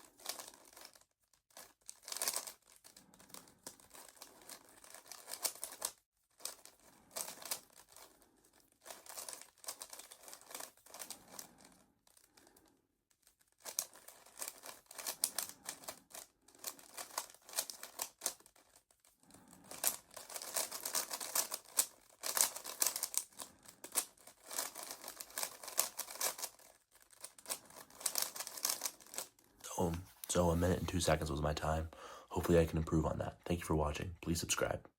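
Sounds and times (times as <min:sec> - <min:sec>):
plastic puzzle cube clicking: 0:00.1 - 0:12.3, 0:13.2 - 0:18.9, 0:19.6 - 0:29.4.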